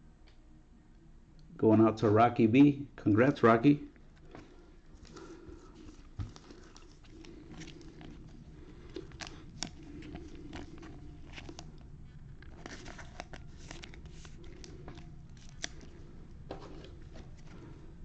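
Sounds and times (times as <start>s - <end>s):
low steady hum: 0.0s - 18.0s
cards and wrapper crinkling: 4.1s - 17.8s.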